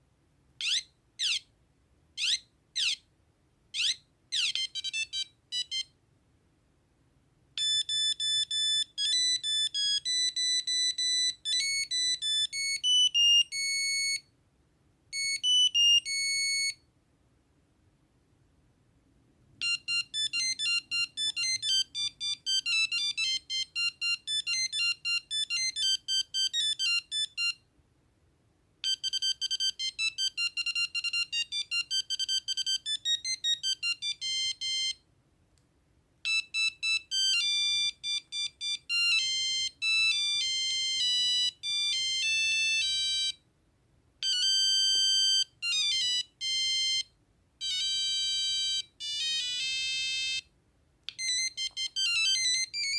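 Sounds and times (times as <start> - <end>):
mobile phone beeping ringtones: 0.6 - 1.4, 2.2 - 3.0, 3.8 - 5.9, 7.6 - 14.2, 15.2 - 16.8, 19.6 - 27.6, 28.8 - 35.0, 36.3 - 43.4, 44.2 - 50.5, 51.1 - 52.9.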